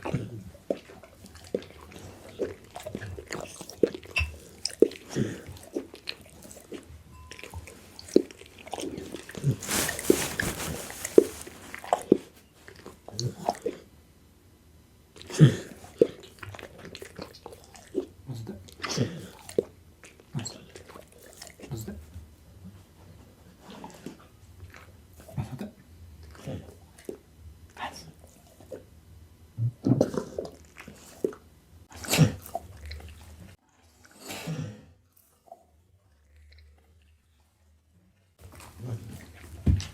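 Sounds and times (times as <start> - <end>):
dog chewing food: 0.2 - 13.8.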